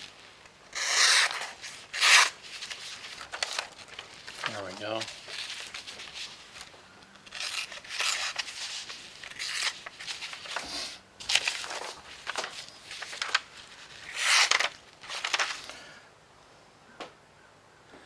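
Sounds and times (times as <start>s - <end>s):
knife blade tearing through paper: 0.7s - 6.7s, 7.3s - 13.4s, 14.0s - 15.8s.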